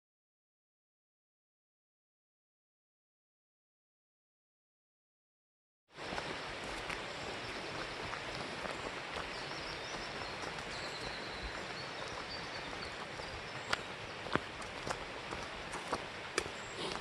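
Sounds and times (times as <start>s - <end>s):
creek water rushing: 5.9s - 17.0s
faint bird chirps: 9.2s - 13.9s.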